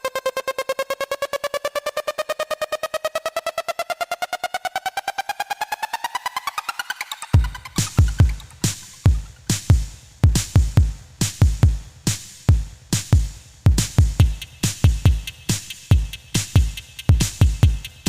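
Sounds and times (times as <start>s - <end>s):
electronic music: 0.0s - 9.9s, 14.0s - 18.0s
deep kick drums: 7.4s - 18.0s
snare or clap hits: 7.8s - 18.0s.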